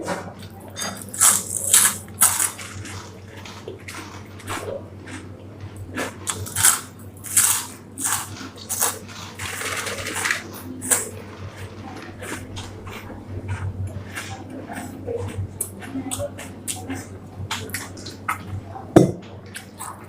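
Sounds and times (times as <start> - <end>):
person crunching snacks: 1.0 - 4.1, 6.0 - 11.1.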